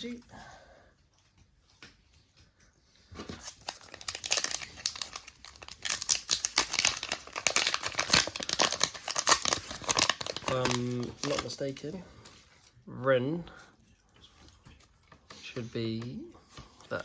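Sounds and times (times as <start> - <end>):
foil wrapper crinkling: 3.2 - 11.9.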